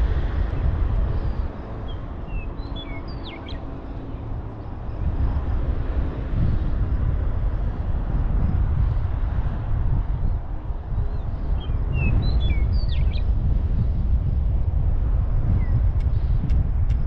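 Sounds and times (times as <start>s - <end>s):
wind buffeting microphone: 0.0s - 17.0s
bird chirps: 2.3s - 3.6s.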